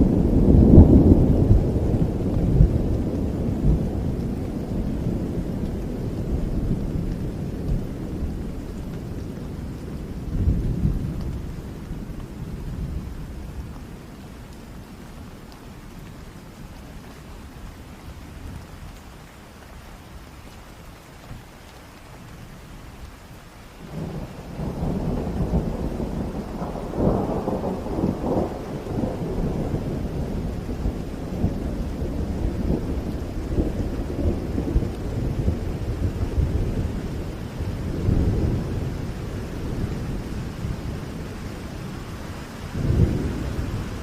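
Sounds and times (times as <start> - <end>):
rolling thunder: 0.0 - 13.8, 23.8 - 44.0
heavy rain: 0.0 - 44.0.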